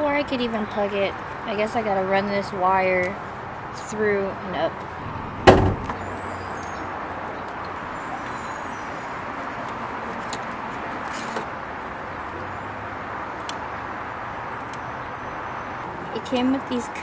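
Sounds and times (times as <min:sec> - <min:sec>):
loud knock: 0:05.4 - 0:06.0.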